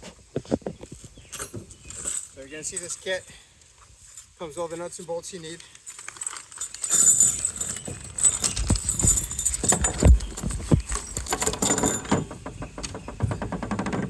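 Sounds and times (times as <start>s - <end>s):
metal hardware clinking: 6.0s - 12.4s
dull knocks: 8.6s - 14.0s.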